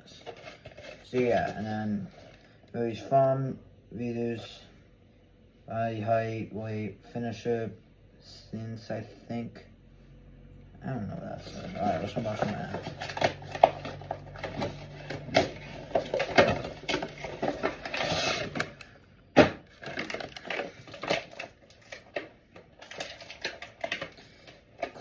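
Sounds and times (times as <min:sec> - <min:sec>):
packaging rustling: 0:00.1 - 0:02.6, 0:11.5 - 0:25.0
packaging clicks and crinkles: 0:00.1 - 0:02.7, 0:11.5 - 0:18.9, 0:19.7 - 0:25.0.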